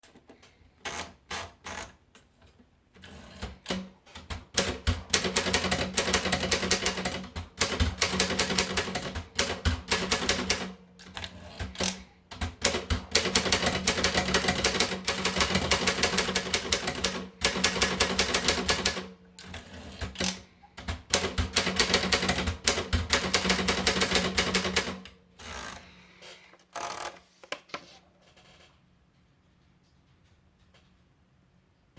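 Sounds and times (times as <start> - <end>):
typewriter keystrokes: 3.6 - 19.1, 20.0 - 25.2.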